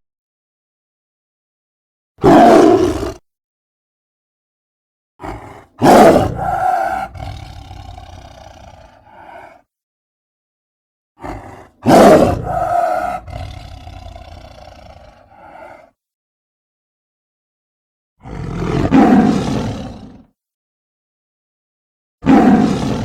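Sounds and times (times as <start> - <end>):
monster roar: 2.2 - 3.2, 5.2 - 9.6, 11.2 - 15.9, 18.2 - 20.2, 22.2 - 23.0.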